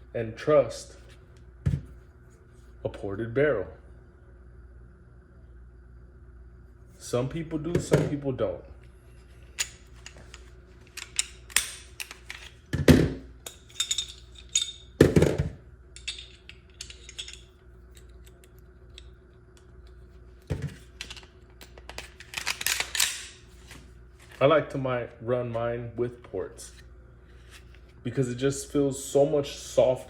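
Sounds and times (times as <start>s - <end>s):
faint steady hum: 0.0s - 30.0s
pistol parts clicking and clacking: 9.6s - 12.5s, 16.0s - 19.1s, 21.0s - 23.4s.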